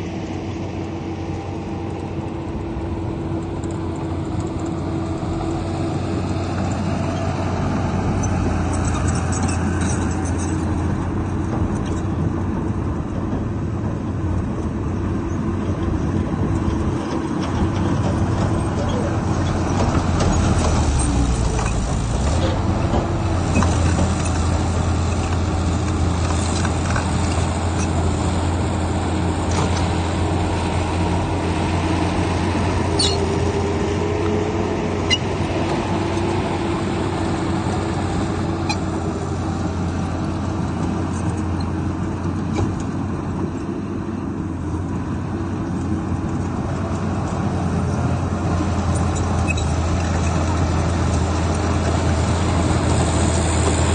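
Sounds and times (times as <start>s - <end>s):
diesel machinery running: 0.0s - 53.9s.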